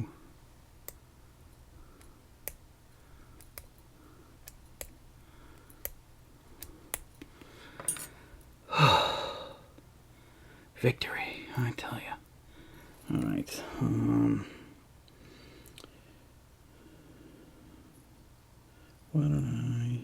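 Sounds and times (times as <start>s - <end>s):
person sighing: 8.7s - 9.8s.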